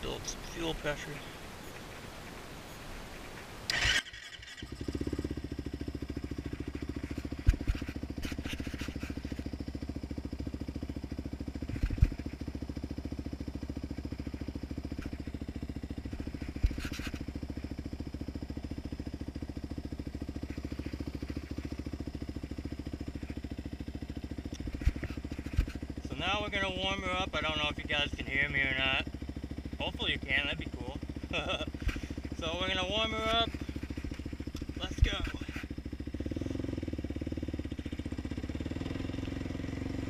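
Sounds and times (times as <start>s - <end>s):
quad engine starting and idling: 3.6s - 40.0s.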